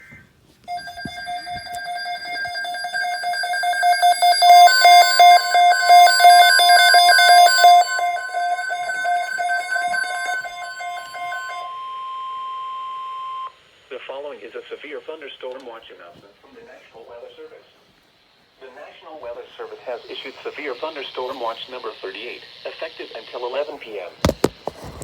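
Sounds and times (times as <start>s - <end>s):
steady alert tone: 0.7s - 11.8s
pulsing electronic alarm beeps: 0.7s - 13.5s.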